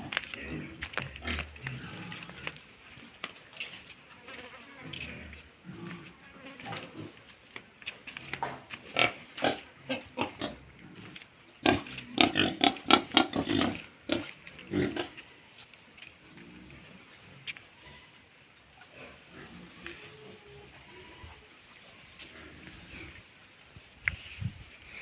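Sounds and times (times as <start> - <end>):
pigs grunting: 0.0 - 3.1, 4.9 - 7.2, 8.3 - 15.3, 16.2 - 21.4, 22.1 - 23.4.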